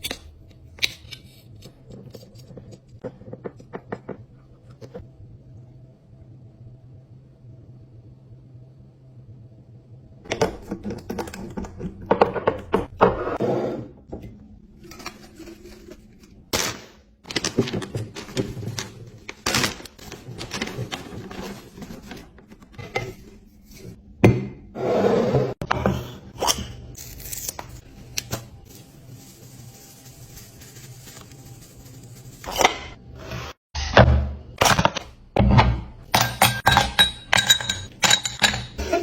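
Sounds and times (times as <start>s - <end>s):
containers thunking and scraping: 10.3s - 26.4s.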